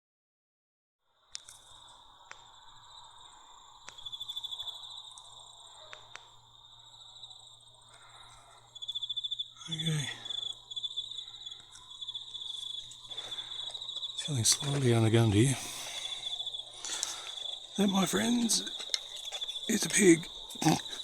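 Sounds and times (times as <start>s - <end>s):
crickets trilling: 1.1s - 21.0s
faint sharp clicks: 1.3s - 2.5s, 3.8s - 4.4s, 5.9s - 6.4s, 16.8s - 17.4s.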